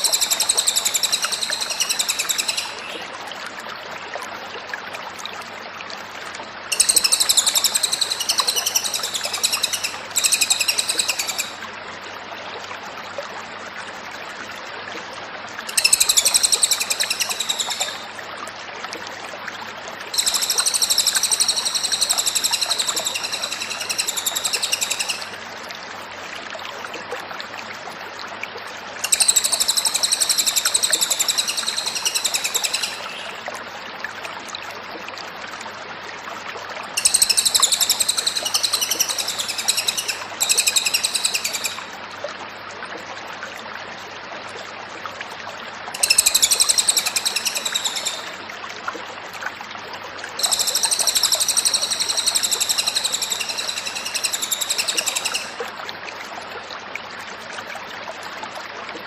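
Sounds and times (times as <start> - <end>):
bird singing high-pitched song: 0.0 - 3.1, 6.7 - 11.6, 15.7 - 18.1, 20.2 - 25.3, 29.0 - 33.4, 37.0 - 41.9, 46.0 - 48.4, 50.4 - 55.6
steady background hiss: 6.5 - 12.5.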